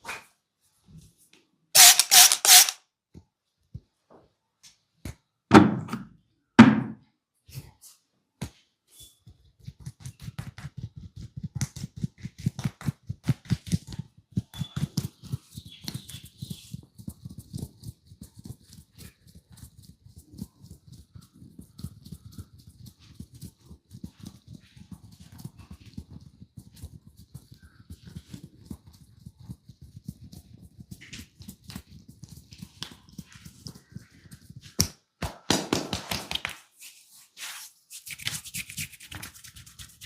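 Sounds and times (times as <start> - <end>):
hard slaps: 34.8 - 36.6.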